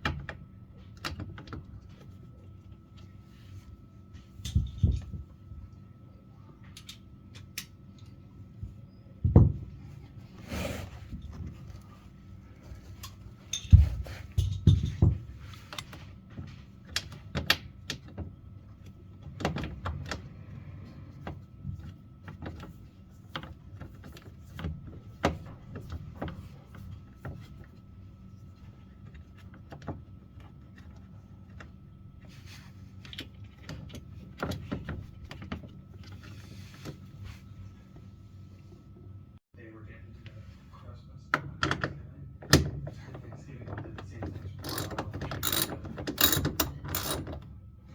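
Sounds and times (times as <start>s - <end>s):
tools and metal parts clanking: 13.0s - 15.2s, 44.6s - 47.4s.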